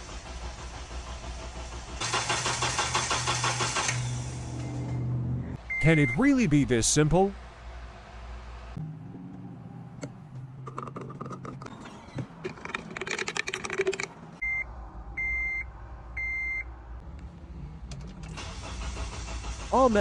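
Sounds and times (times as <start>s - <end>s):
clicking and rattling handling: 12.4s - 14.2s.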